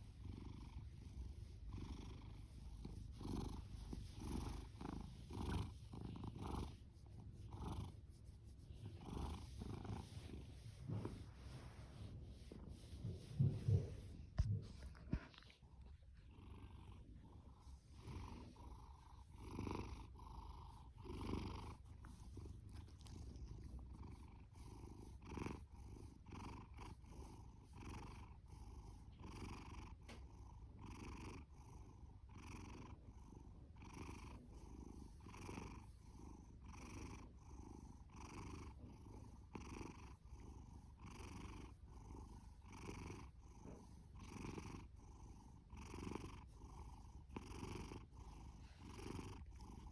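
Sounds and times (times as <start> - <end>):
cat purring: 0.0 - 49.9.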